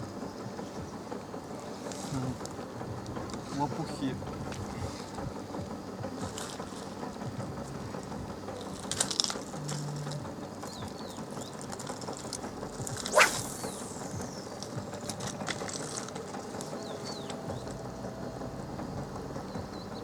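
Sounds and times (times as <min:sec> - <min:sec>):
sharp swish: 0:13.0 - 0:14.3.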